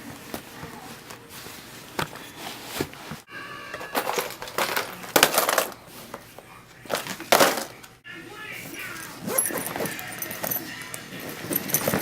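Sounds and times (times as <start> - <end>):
rustling and crunching: 0.0 - 3.3, 4.0 - 7.8.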